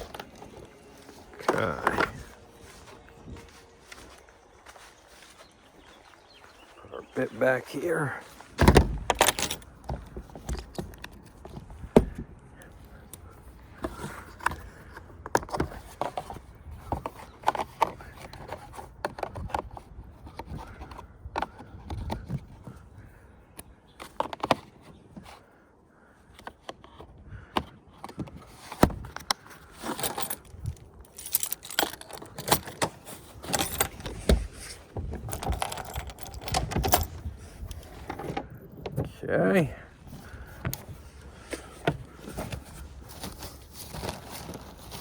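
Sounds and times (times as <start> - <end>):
metal tools clinking and rattling: 0.0 - 5.4, 8.7 - 11.4, 28.7 - 38.9, 40.3 - 45.0.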